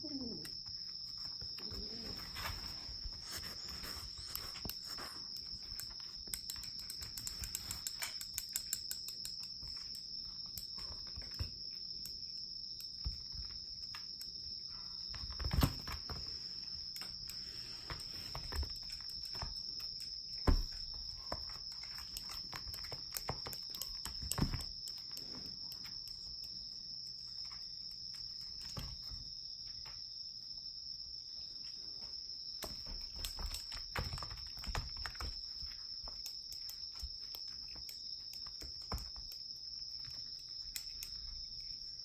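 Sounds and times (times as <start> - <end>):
light ticks and clicks: 4.4 - 14.4.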